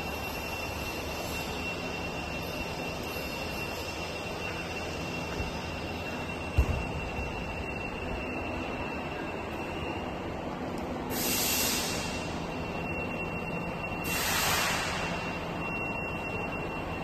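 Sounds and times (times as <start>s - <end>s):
faint high whine: 0.0s - 17.0s
workshop machinery running: 0.0s - 17.0s
short bursts of hiss: 11.1s - 12.1s, 14.1s - 15.0s.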